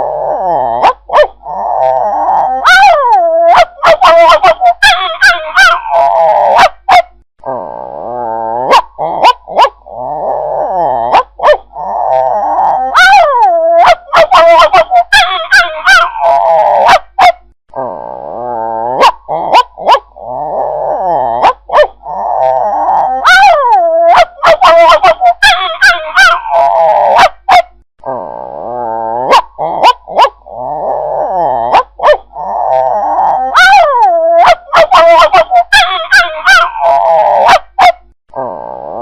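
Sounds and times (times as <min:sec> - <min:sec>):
dog snarling growls: 0:00.0 - 0:39.0
dog barking: 0:00.8 - 0:01.4, 0:02.6 - 0:07.2, 0:08.7 - 0:09.8, 0:11.0 - 0:11.7, 0:12.9 - 0:17.5, 0:19.0 - 0:20.1, 0:21.4 - 0:22.0, 0:23.2 - 0:27.8, 0:29.3 - 0:30.4, 0:31.6 - 0:32.3, 0:33.5 - 0:38.1.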